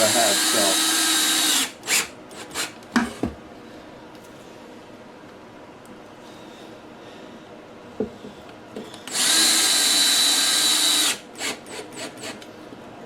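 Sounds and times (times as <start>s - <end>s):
power drill driving screw into wood: 0.0s - 2.7s, 9.1s - 12.4s.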